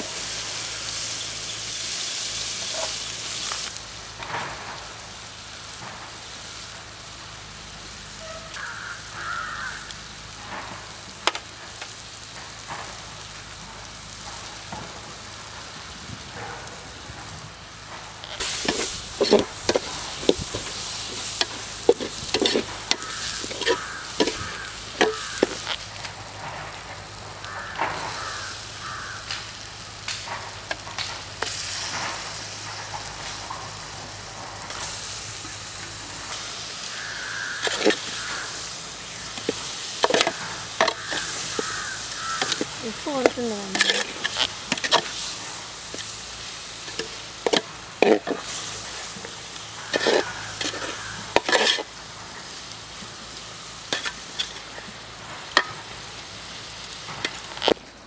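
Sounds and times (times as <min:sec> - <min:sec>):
food sizzling in a pan: 0:00.0 - 0:57.8
metal utensil scraping a pan: 0:18.2 - 0:25.8, 0:36.3 - 0:52.0, 0:53.8 - 0:55.8.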